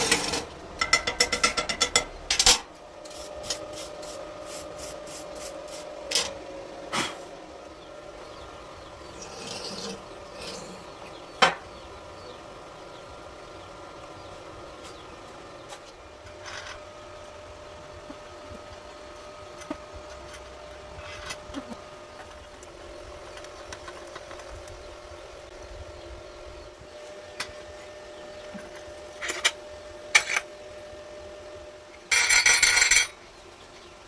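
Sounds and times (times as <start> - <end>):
electrical hum: 0.0 - 34.0.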